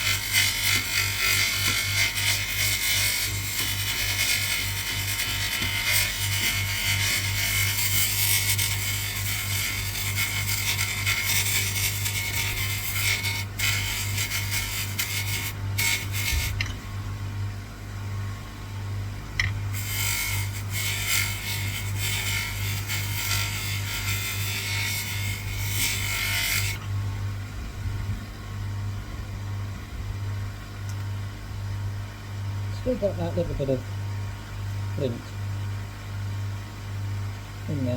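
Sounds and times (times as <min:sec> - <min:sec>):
bench polisher motor hum: 0:00.0 - 0:16.7, 0:19.4 - 0:26.8.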